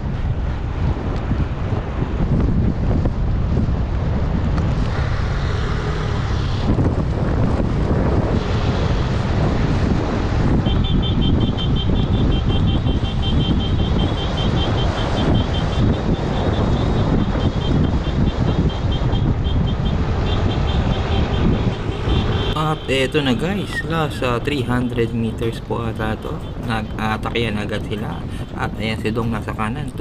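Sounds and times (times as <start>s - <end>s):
vehicle running: 0.0s - 30.0s
wind rumbling on microphone: 0.0s - 30.0s.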